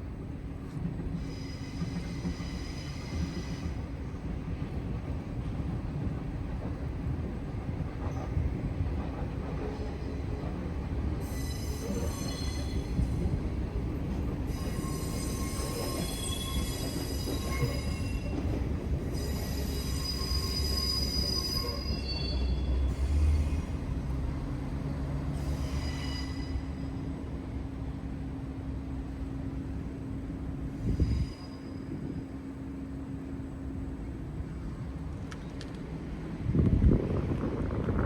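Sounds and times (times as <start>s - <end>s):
high-pitched metallic squeals: 14.5s - 18.4s, 19.1s - 23.7s, 25.4s - 27.0s, 30.8s - 32.2s.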